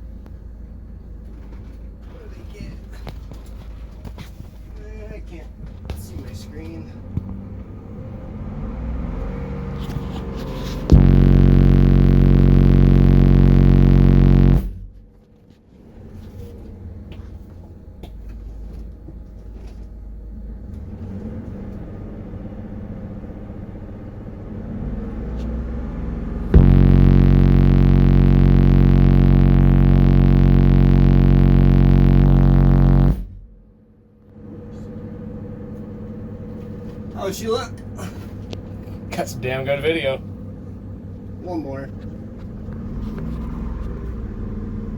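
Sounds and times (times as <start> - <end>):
low steady rumble: 9.1 - 15.4, 17.7 - 43.4
subwoofer bass-tone bursts: 9.9 - 15.2, 25.0 - 33.9.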